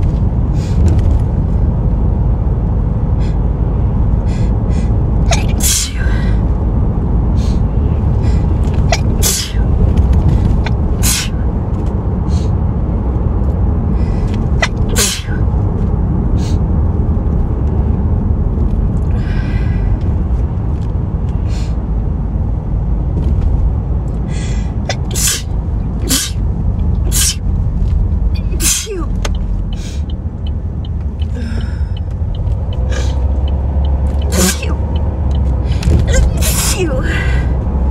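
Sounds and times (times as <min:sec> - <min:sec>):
steady low rumble: 0:00.0 - 0:37.9
woman sneezing: 0:05.3 - 0:06.2, 0:08.9 - 0:09.6, 0:14.6 - 0:15.4, 0:24.9 - 0:25.5, 0:26.1 - 0:26.4, 0:28.5 - 0:29.1, 0:34.4 - 0:34.8, 0:36.1 - 0:37.2.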